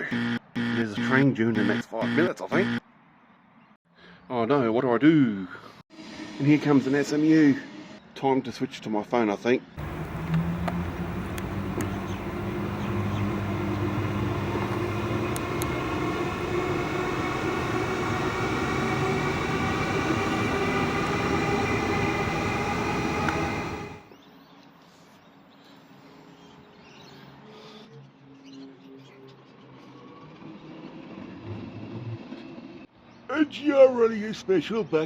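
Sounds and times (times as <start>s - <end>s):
electric motors whining: 9.8s - 24.1s
train wheel and rail noise: 9.8s - 24.1s.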